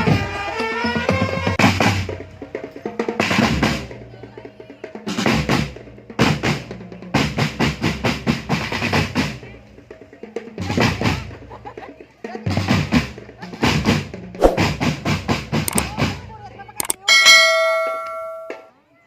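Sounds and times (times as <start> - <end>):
marching band drum line: 0.0 - 2.2.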